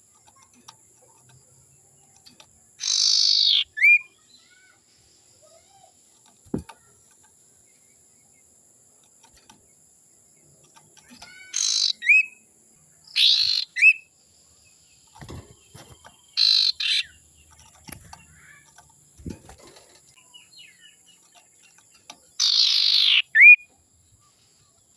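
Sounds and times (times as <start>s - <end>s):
bird harsh rasping calls: 2.8s - 4.6s, 11.0s - 12.4s, 13.1s - 14.0s, 16.2s - 17.2s, 22.3s - 23.6s.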